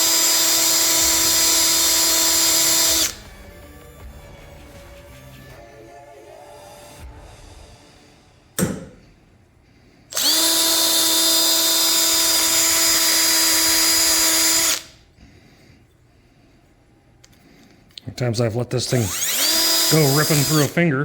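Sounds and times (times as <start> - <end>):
power tool wire wheel whine: 0.0 - 3.3, 18.9 - 20.8.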